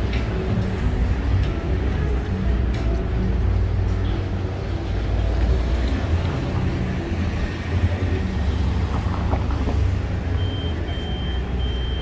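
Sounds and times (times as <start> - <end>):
vehicle engine rumble: 0.0 - 12.0
short high beeps: 10.4 - 12.0.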